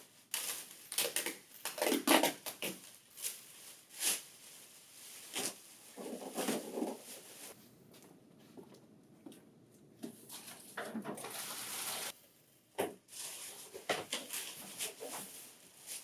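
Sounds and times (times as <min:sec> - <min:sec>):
packaging rustling and crinkling: 0:00.2 - 0:07.6, 0:13.1 - 0:16.0.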